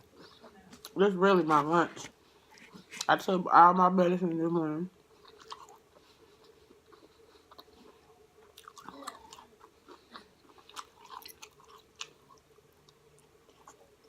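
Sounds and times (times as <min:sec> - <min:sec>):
wet mouth chewing smacks: 0:05.2 - 0:14.0.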